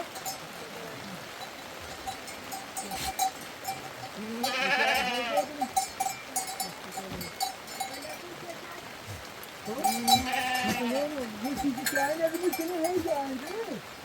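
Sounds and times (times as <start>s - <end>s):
livestock bell clinking: 0.0s - 8.8s, 9.5s - 13.9s
sheep or goat bleating: 4.2s - 5.7s, 9.7s - 11.2s.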